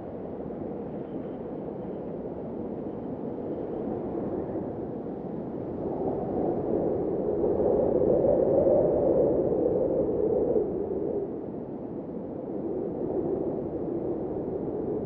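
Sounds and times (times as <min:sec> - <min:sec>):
blizzard wind rushing: 0:05.4 - 0:15.0.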